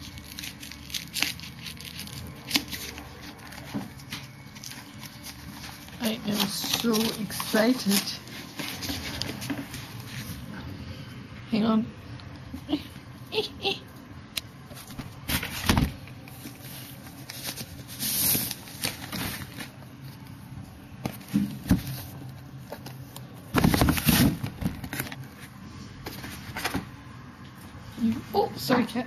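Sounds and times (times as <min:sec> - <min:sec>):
packaging rustling and scraping: 0:00.0 - 0:10.5, 0:14.7 - 0:20.4, 0:21.0 - 0:26.9.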